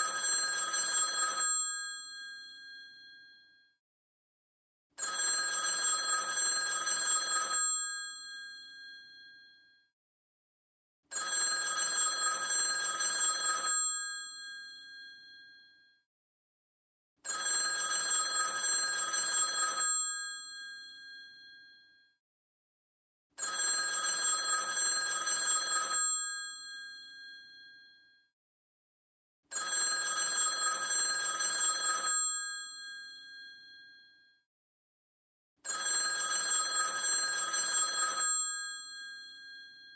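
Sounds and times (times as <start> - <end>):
telephone bell ringing: 0.0 - 3.6, 5.0 - 9.7, 11.1 - 15.8, 17.2 - 22.0, 23.4 - 28.1, 29.5 - 34.2, 35.6 - 39.9.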